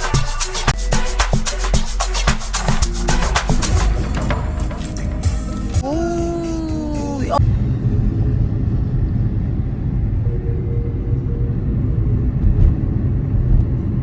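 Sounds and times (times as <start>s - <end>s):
moving car rumble: 2.8s - 14.0s
car bump: 3.2s - 5.8s.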